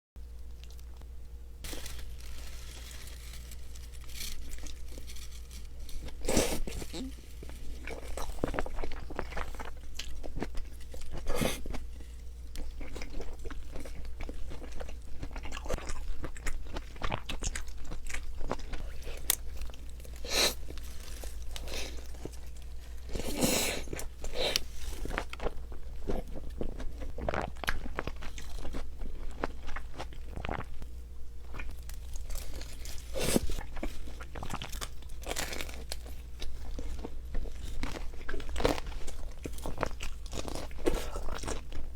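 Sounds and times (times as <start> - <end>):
crunchy pizza bites: 0.4 - 41.9
wet chewing sounds: 1.7 - 30.9.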